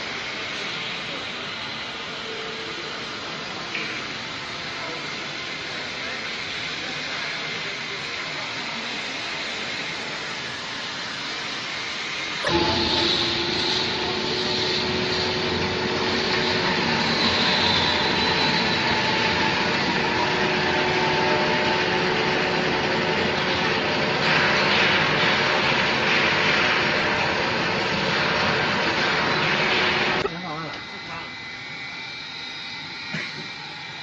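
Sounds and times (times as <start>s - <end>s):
dryer machine rushing and humming: 9.0s - 34.0s.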